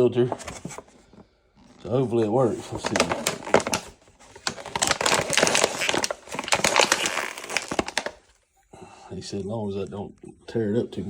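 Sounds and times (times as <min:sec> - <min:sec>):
packaging crinkling and rustling: 0:00.3 - 0:08.4.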